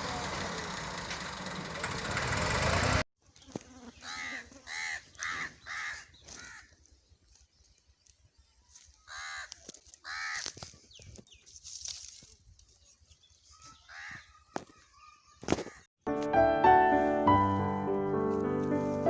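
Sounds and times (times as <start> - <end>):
crow cawing: 4.0 - 6.7, 9.1 - 10.6.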